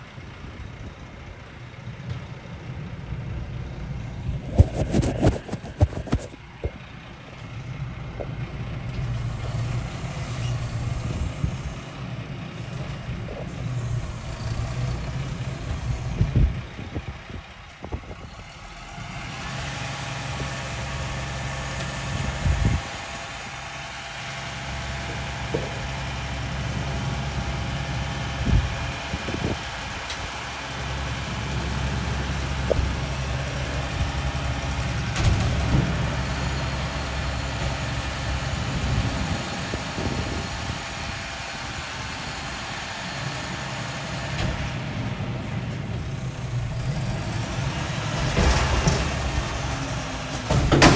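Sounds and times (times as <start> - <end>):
garbage truck engine running: 1.8 - 50.9
engine whine: 3.1 - 30.2, 30.8 - 50.9
loud metal bangs and clattering: 47.1 - 50.9.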